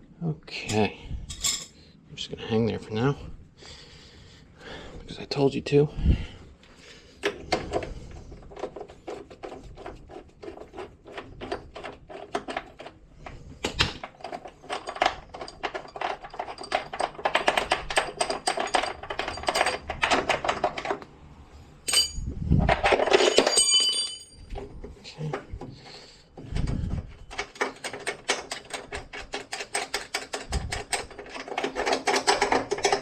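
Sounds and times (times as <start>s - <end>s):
rapid plastic clicking: 27.3s - 33.0s.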